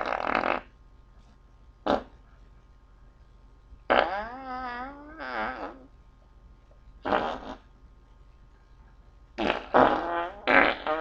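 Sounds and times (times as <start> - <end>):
farts: 0.0 - 0.7, 1.8 - 2.2, 3.9 - 5.9, 7.0 - 7.7, 9.4 - 11.0.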